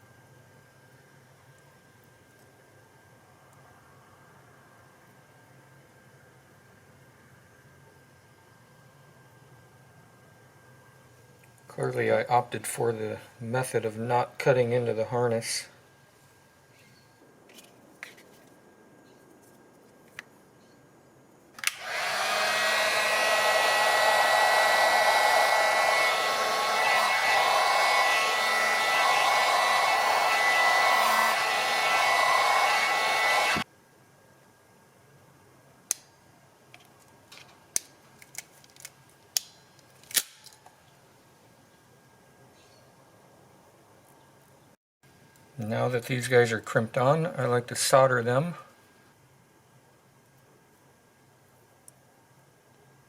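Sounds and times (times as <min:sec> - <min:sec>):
heat gun blowing: 0:21.6 - 0:33.6.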